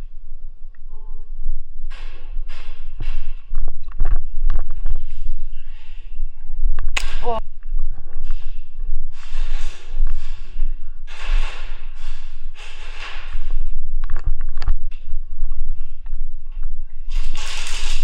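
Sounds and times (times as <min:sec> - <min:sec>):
heavy breathing: 0:04.7 - 0:06.7
sharp clicks: 0:06.8 - 0:07.4.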